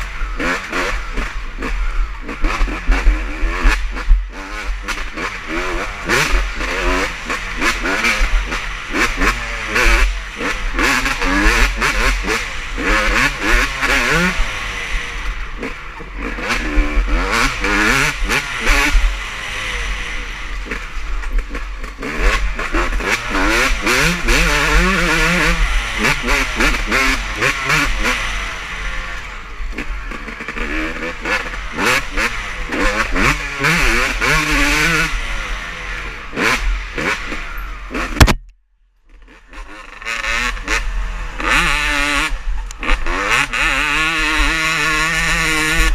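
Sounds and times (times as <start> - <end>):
motocross bikes revving past: 0.0 - 38.3, 39.2 - 45.9.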